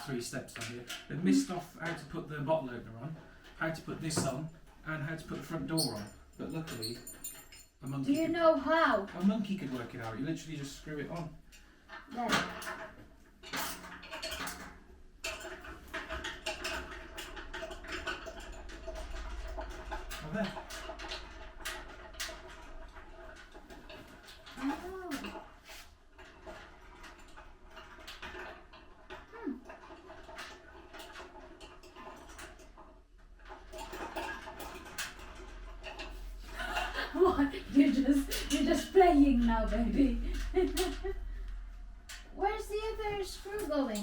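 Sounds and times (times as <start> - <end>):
metal parts clinking and rattling: 3.4 - 44.0.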